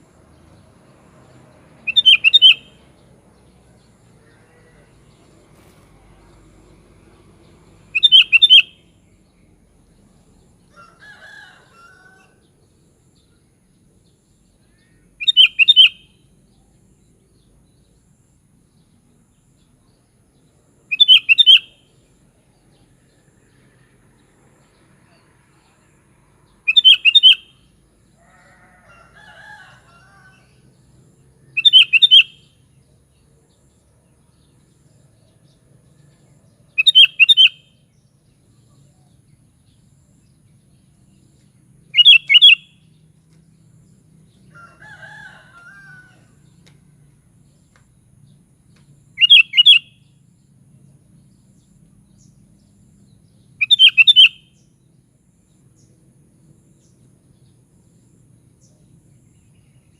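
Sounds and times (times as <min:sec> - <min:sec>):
bird song bursts: 0:01.8 - 0:03.0, 0:07.9 - 0:09.4, 0:14.7 - 0:16.3, 0:20.8 - 0:22.0, 0:26.7 - 0:27.6, 0:31.5 - 0:32.6, 0:36.7 - 0:37.9, 0:40.6 - 0:43.0, 0:49.2 - 0:50.1, 0:53.1 - 0:54.8.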